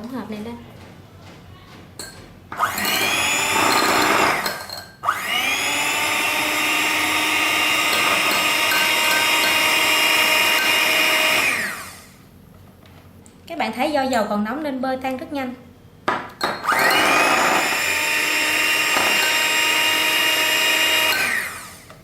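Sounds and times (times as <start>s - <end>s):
electric hand mixer whining: 2.6s - 12.2s, 16.6s - 22.0s.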